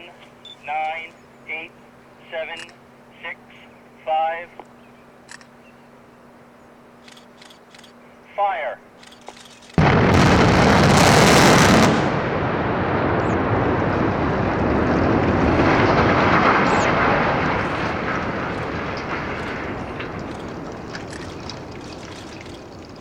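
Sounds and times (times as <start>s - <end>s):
debris crashing: 9.8s - 23.0s
explosive blast roar: 9.8s - 23.0s
heavy rumble of collapsing structure: 9.8s - 23.0s.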